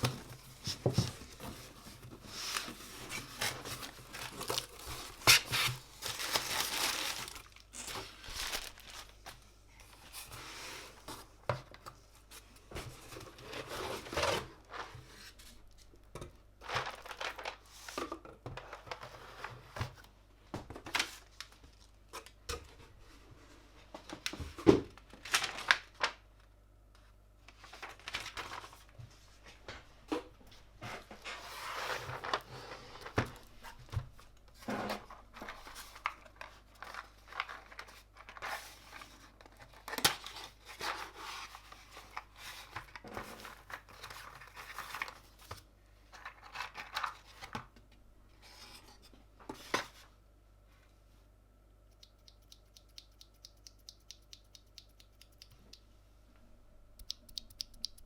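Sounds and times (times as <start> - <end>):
packaging crinkling and tearing: 2.6 - 9.4, 16.6 - 17.7, 25.2 - 26.2
sharp clicks and knocks: 57.0 - 58.0.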